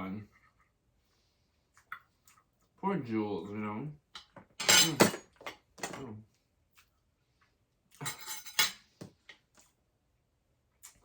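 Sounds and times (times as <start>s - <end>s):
cutlery clinking on a plate: 4.2s - 6.0s, 8.0s - 8.8s.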